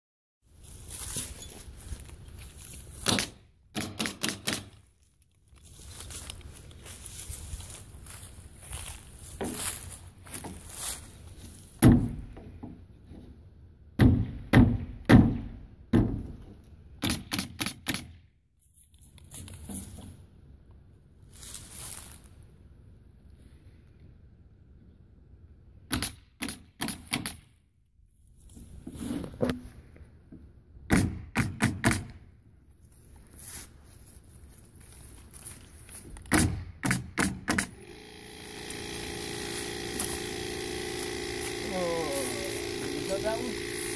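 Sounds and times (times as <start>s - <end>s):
steady motor hum: 37.6s - 43.9s.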